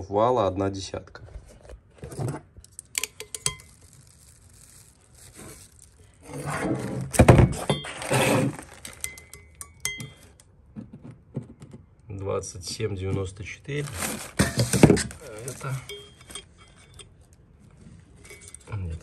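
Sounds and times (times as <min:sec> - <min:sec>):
metal tools clinking and scraping: 0:02.7 - 0:10.4, 0:13.8 - 0:17.4, 0:18.1 - 0:19.0.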